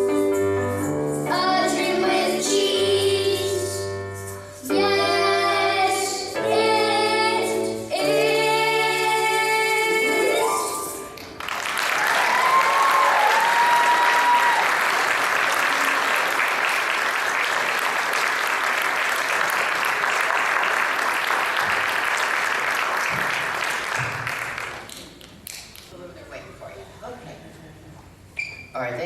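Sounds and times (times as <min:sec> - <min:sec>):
audience clapping: 0:11.2 - 0:25.9
person whooping: 0:12.0 - 0:14.8.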